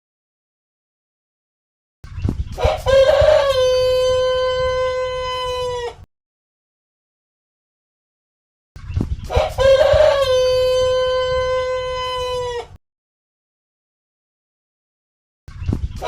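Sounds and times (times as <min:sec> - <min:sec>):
rooster crowing: 0:02.6 - 0:06.0, 0:09.3 - 0:12.8.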